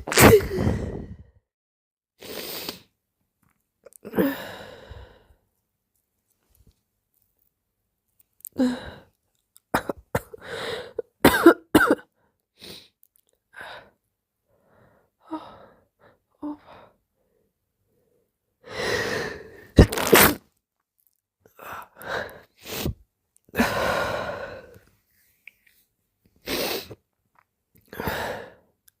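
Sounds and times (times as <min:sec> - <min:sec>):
person sneezing: 0:00.0 - 0:00.9, 0:19.8 - 0:20.4.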